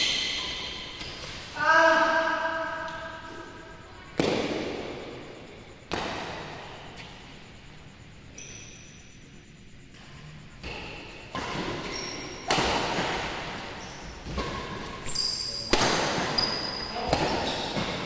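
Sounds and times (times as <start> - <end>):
shoes squeaking on court floor: 0.0 - 9.2, 9.8 - 18.0
racket hitting shuttlecock: 10.6 - 18.0.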